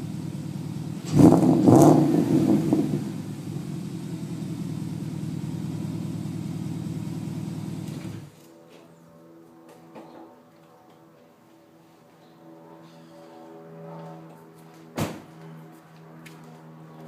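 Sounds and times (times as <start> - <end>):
car engine revving and idling: 0.0 - 8.3.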